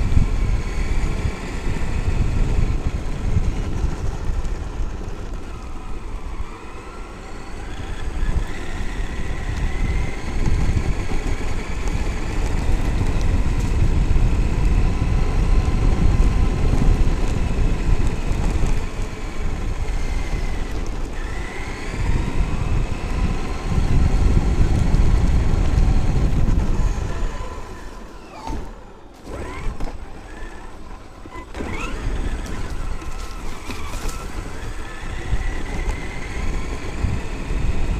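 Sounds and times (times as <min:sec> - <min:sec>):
electric motor whining: 0:00.0 - 0:37.9
wind and tyre rumble: 0:00.0 - 0:37.9.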